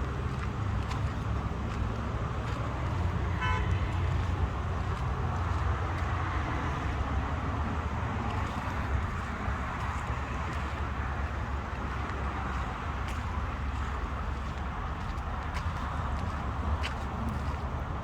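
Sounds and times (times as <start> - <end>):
low rumble of vehicles: 0.0 - 18.0
short vehicle horn toot: 3.4 - 3.8.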